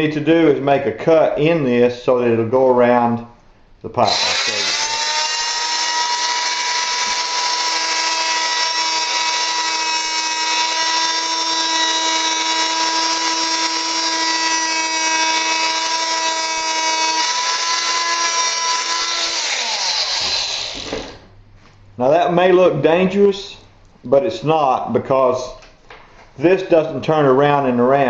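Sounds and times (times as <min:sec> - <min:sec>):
oscillating multi-tool cutting pipe: 0:04.1 - 0:21.2.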